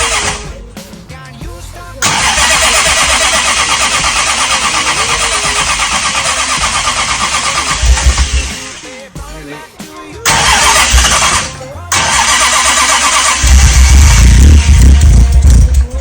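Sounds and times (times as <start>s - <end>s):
starter motor cranking engine: 0.0s - 0.8s, 1.7s - 9.1s, 10.3s - 16.0s
heavy low thuds: 5.3s - 9.4s, 13.6s - 16.0s.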